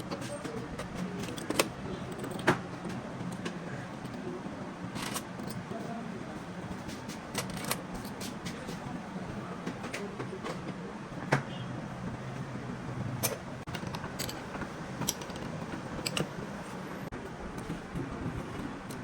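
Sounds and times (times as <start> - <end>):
metal parts and hand tools clicking: 0.0 - 5.7, 6.7 - 8.8, 13.2 - 16.8.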